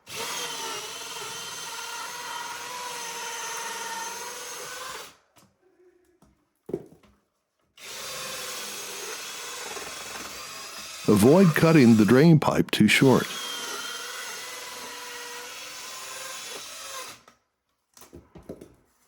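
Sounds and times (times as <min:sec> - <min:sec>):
power tool cutting pipe: 0:13.3 - 0:17.3.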